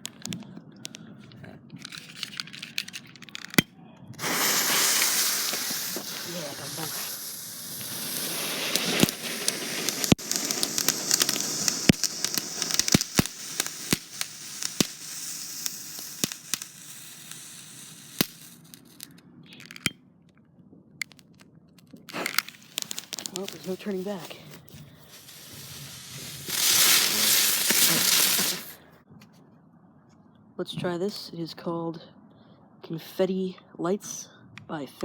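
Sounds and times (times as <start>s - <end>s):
firework cracks and pops: 0.0s - 1.0s, 4.2s - 19.9s, 21.0s - 28.9s
ground firework hissing: 4.2s - 19.9s, 21.8s - 29.0s.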